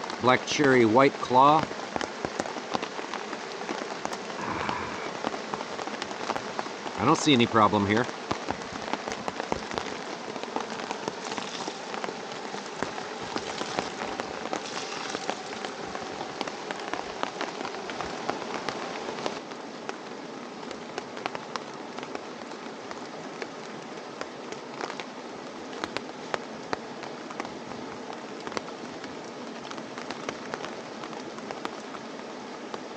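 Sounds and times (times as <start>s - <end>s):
steady rain: 0.0s - 32.9s.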